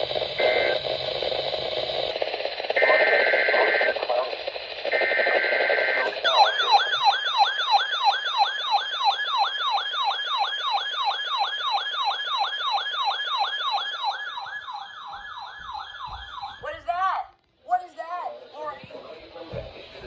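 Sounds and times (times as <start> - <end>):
electronic yelp alert tone: 6.0 - 7.8.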